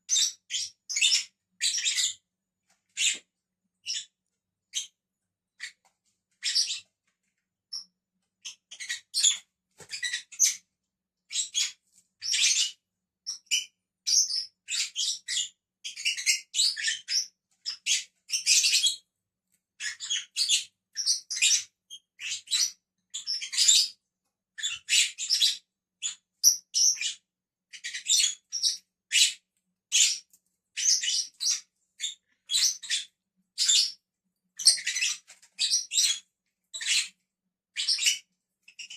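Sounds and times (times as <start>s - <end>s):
lovebirds chirping: 0.1s - 2.2s, 6.4s - 6.9s, 11.3s - 19.0s, 19.8s - 24.0s, 24.6s - 34.0s, 34.6s - 37.2s.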